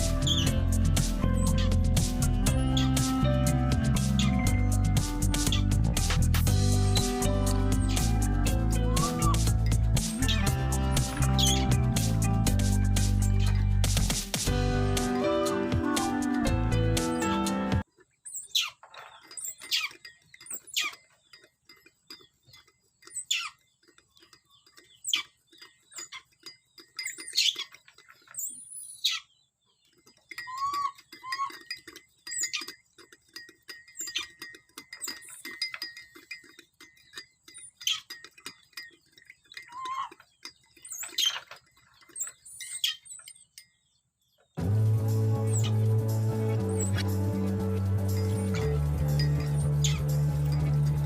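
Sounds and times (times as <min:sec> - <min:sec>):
monkey squealing: 0:00.2 - 0:00.6, 0:01.3 - 0:03.2, 0:04.1 - 0:04.8, 0:05.4 - 0:05.8, 0:06.9 - 0:12.2, 0:18.3 - 0:21.1, 0:30.4 - 0:32.7, 0:39.6 - 0:40.2, 0:45.5 - 0:45.8, 0:48.2 - 0:50.1.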